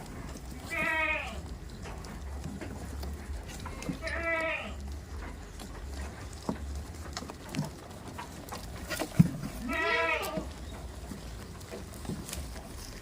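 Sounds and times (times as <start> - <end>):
goat bleating: 0.6 - 1.6, 3.7 - 5.0, 9.4 - 10.6.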